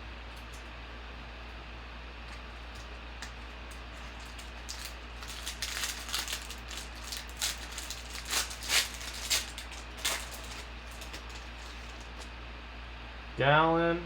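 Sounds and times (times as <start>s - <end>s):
foil wrapper crinkling and tearing: 2.2s - 12.4s.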